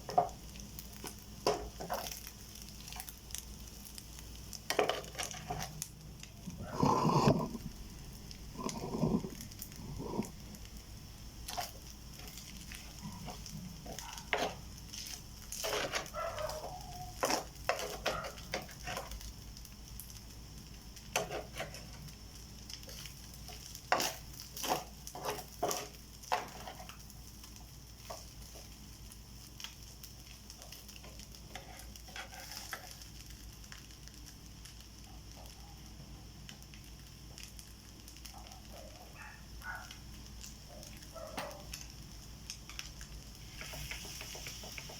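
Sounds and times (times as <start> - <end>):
rice sizzling in a pan: 0.0 - 44.9
utensil scraping a pan: 6.6 - 7.7, 13.2 - 19.1, 21.2 - 22.0, 23.9 - 27.0, 31.5 - 33.0.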